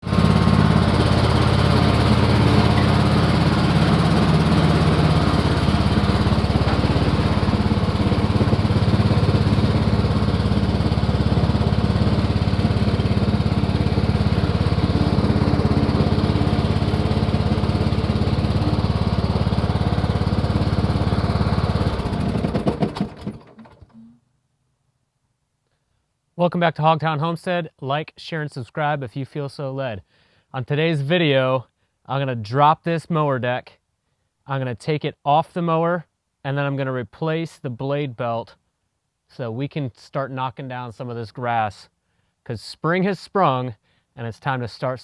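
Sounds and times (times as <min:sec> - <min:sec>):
lawn tractor engine running: 0:00.0 - 0:24.0.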